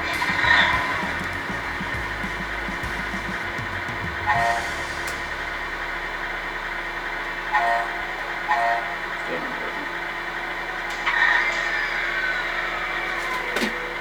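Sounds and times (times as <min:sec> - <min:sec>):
engine-like hum from speaker: 0:00.0 - 0:14.0
short horn toots: 0:04.2 - 0:05.8.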